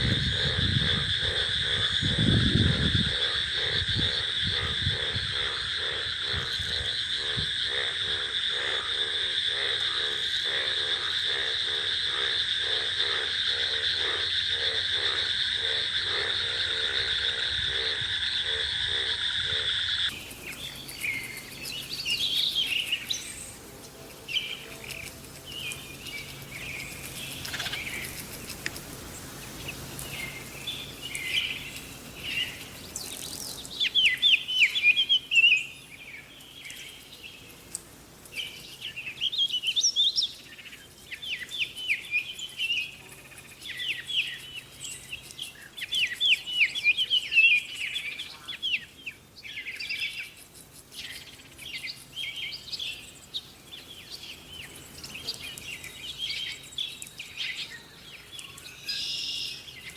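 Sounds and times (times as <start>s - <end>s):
faint steady hiss: 20.1s - 59.9s
small birds chirping: 20.1s - 59.9s.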